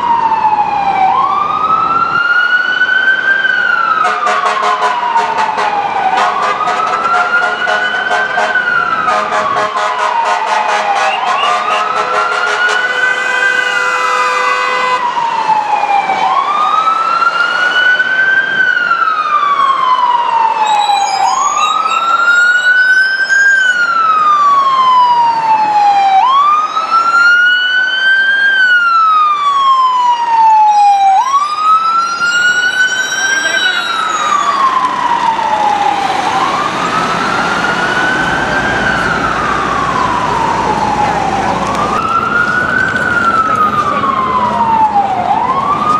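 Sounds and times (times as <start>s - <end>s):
ambulance siren wailing: 0.0s - 45.9s
vehicle horn: 4.0s - 15.0s.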